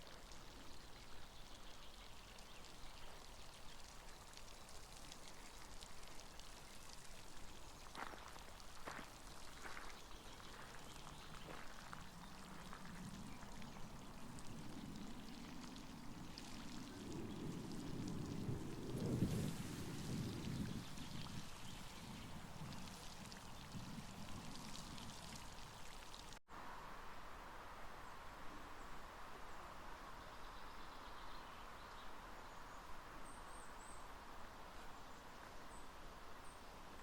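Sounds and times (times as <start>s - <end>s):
sharp drips: 0.0s - 26.4s
water patter and splash: 0.0s - 26.4s.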